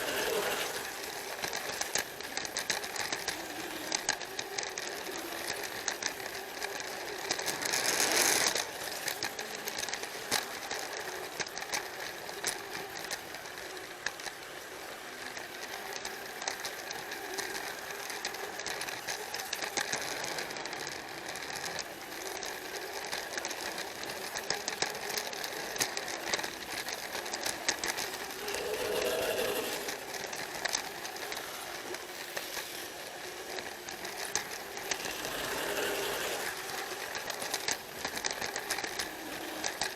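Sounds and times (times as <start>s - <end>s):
toy train motor whirring: 0.0s - 39.9s
wheels clattering over track joints: 0.0s - 39.9s.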